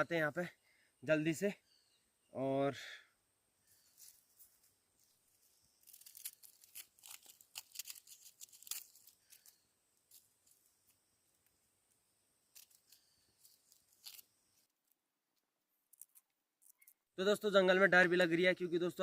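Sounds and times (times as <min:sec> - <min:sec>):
plastic packet crinkling and tearing: 0:05.8 - 0:10.2, 0:12.5 - 0:14.4.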